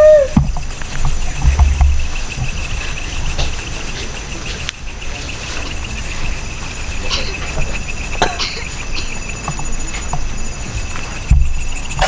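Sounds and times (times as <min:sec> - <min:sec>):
wind rumble on microphone: 0:00.0 - 0:08.2, 0:08.8 - 0:12.0
crickets chirring: 0:00.0 - 0:12.0
clicks and rustles near microphone: 0:00.4 - 0:06.3.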